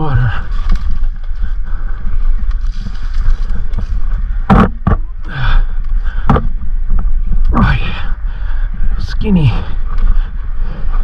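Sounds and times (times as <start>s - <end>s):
bike clunking over bumps: 0.0s - 8.4s
bike tyres rumbling on trail: 0.0s - 11.0s
wind on microphone: 0.0s - 11.0s.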